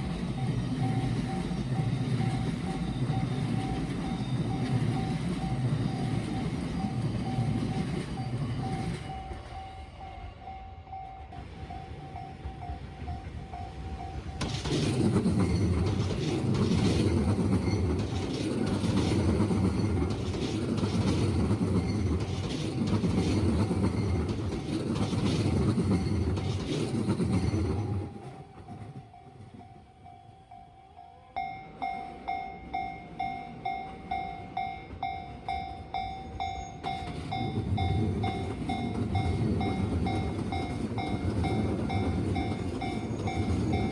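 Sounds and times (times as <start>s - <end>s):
level crossing warning bell ringing: 0.0s - 14.4s, 28.7s - 43.9s
train rumble: 0.0s - 43.9s
train wheels clacking over rail joints: 12.6s - 29.0s, 35.0s - 43.9s.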